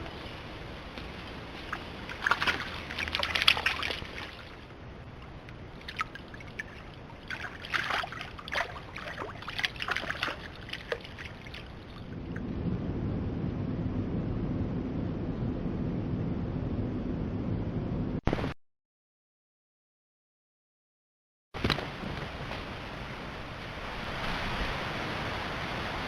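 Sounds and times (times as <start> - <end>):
water splashing in creek: 0.0 - 12.4
low rumble: 0.0 - 18.2.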